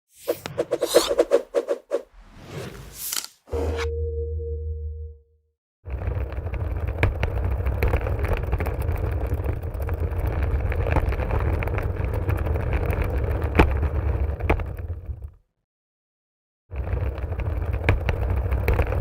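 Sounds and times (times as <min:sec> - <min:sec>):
luggage trolley wheels rumbling: 0:05.9 - 0:14.7
small clicks and rattles: 0:06.0 - 0:13.8.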